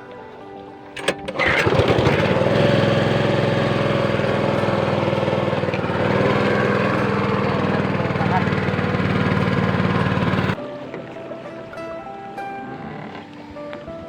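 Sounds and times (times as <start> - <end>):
boat engine running: 1.0 - 10.6
starter clicks: 1.0 - 10.6.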